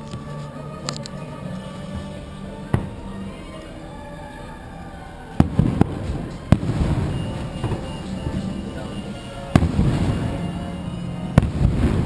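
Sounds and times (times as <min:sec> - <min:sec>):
show music: 0:00.0 - 0:12.0
fireworks bangs: 0:05.4 - 0:12.0
rumbling tail of fireworks: 0:05.4 - 0:12.0.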